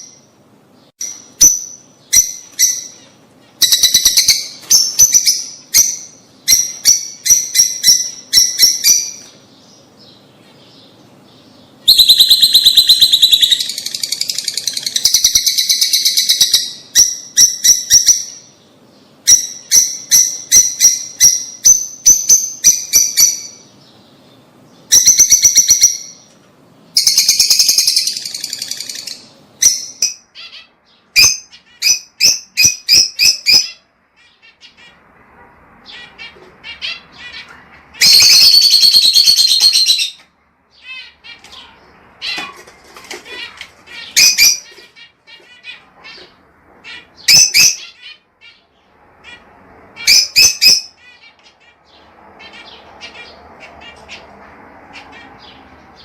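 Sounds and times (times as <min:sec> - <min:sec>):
lovebirds chirping: 0:00.0 - 0:56.0.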